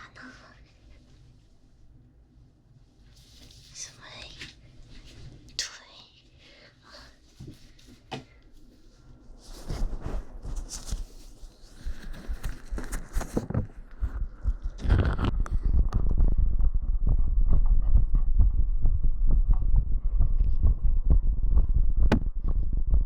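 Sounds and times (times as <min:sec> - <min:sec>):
microphone rubbing on clothing: 0:08.7 - 0:23.0
heartbeat: 0:09.2 - 0:23.0.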